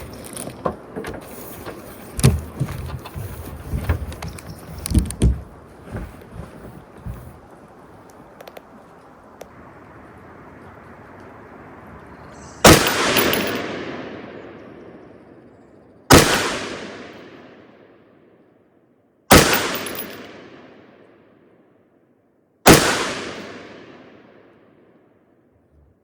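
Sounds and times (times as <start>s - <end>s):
gunshot echo: 12.6s - 15.1s, 16.1s - 18.0s, 19.3s - 21.2s, 22.7s - 24.5s
rifle shots: 12.6s - 15.2s, 16.1s - 18.0s, 19.3s - 21.1s, 22.6s - 24.5s.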